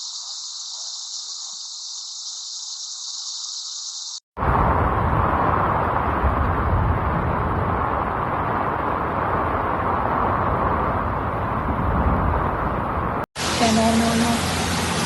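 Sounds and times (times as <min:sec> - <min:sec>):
heavy low rumble: 0:04.4 - 0:15.0
rainstorm and floodwater roaring: 0:04.4 - 0:15.0.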